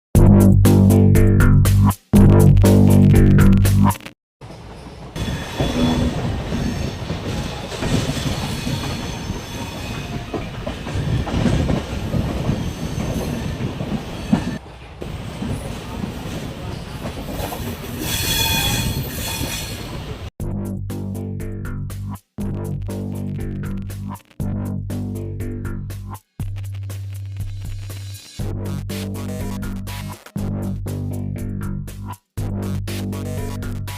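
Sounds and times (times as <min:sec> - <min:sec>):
music: 0:00.2 - 0:04.1, 0:20.4 - 0:33.9
high wheel squeal: 0:04.5 - 0:14.6, 0:16.8 - 0:20.2.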